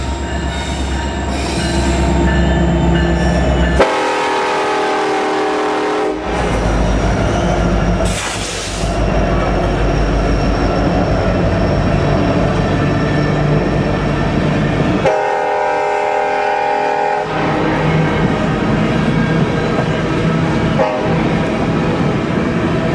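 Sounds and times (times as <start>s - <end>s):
diesel locomotive engine rumble: 0.0s - 22.9s
rail noise: 0.0s - 22.9s
locomotive air horn chord: 3.8s - 6.4s, 15.0s - 17.8s, 20.8s - 21.2s.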